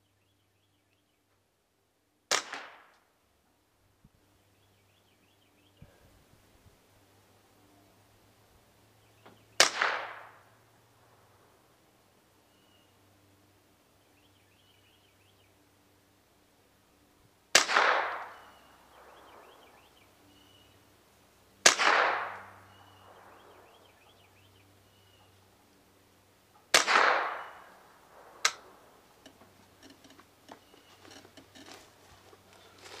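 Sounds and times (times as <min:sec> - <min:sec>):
suppressed rifle shots: 0:02.3 - 0:02.9, 0:09.6 - 0:10.4, 0:17.5 - 0:19.4, 0:21.6 - 0:23.4, 0:26.7 - 0:28.8.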